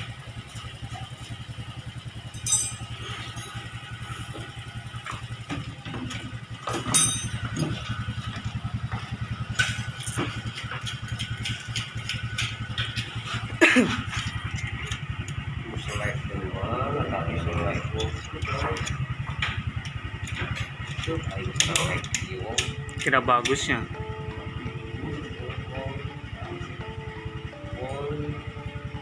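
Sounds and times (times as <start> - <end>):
motorcycle engine idling: 0.0 - 29.0
sharp metal clinks: 2.2 - 3.9, 6.6 - 7.9, 9.4 - 12.8.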